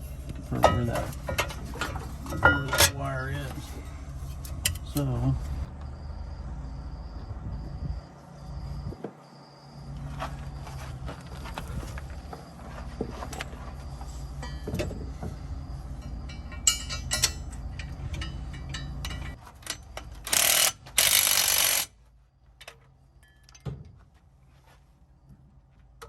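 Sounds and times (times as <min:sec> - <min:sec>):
steady low hum: 0:00.0 - 0:22.4
metal tools clicking and clinking: 0:00.4 - 0:05.0, 0:16.0 - 0:21.9.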